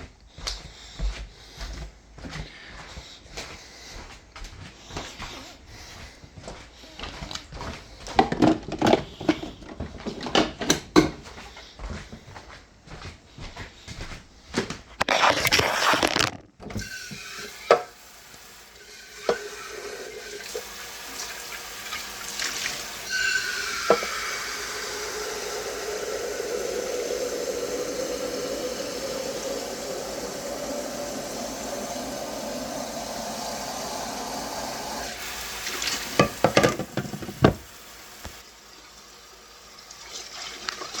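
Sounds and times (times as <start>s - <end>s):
tap water filling a container: 15.0s - 38.9s, 39.7s - 41.0s
knocks and clatter: 36.2s - 37.7s.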